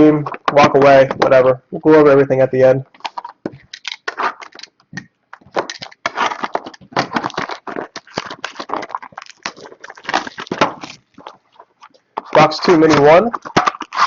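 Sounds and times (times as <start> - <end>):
wrapper and cardboard crinkling: 3.0 - 4.8, 5.4 - 14.0.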